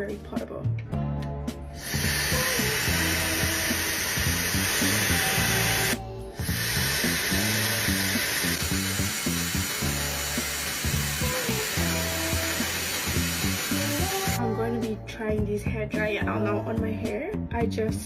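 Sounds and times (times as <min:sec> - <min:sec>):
background music: 0:00.0 - 0:18.0
hair dryer blowing: 0:01.8 - 0:14.4.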